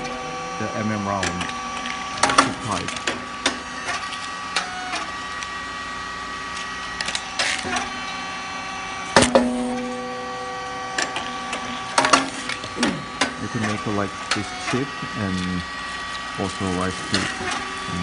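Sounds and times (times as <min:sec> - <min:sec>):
machine humming with clicks: 0:00.0 - 0:18.0
sharp pop with ringing: 0:09.2 - 0:10.1.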